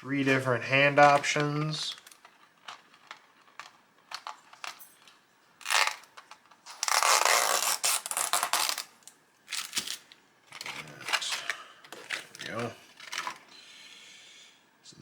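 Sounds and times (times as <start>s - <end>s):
packaging rustling: 0.0s - 13.5s.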